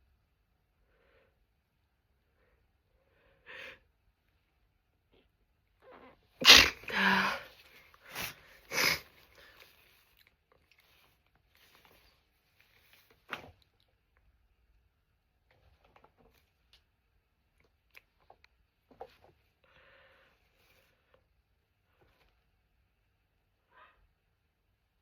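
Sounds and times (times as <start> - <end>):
woman sneezing: 6.4 - 9.1.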